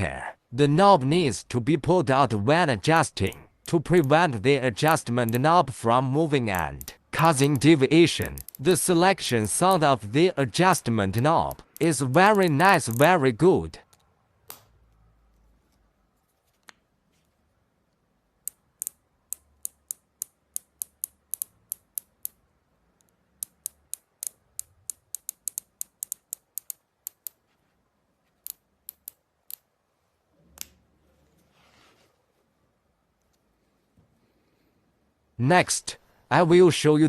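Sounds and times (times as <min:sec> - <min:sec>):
scope knob detent clicks: 0:08.2 - 0:08.6.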